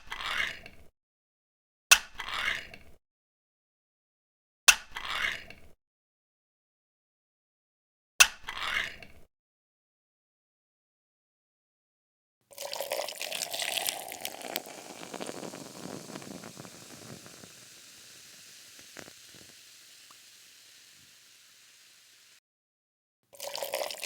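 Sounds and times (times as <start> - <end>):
water pouring into a sink: 12.6 - 22.4, 23.4 - 24.0
small clicks: 14.3 - 22.4.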